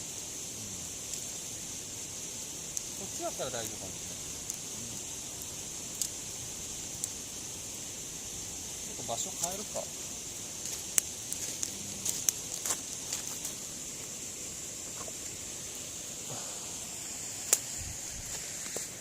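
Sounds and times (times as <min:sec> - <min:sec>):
campfire crackling and popping: 0:00.0 - 0:19.0
steady high hiss: 0:00.0 - 0:19.0.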